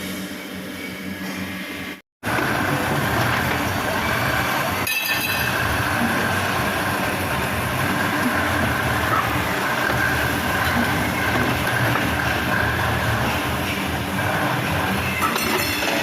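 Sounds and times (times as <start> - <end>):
machine rumble with faint whine: 2.2 - 15.3.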